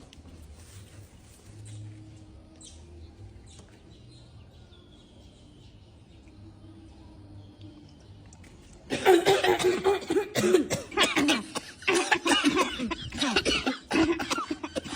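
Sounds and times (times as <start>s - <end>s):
person coughing: 8.9s - 14.9s.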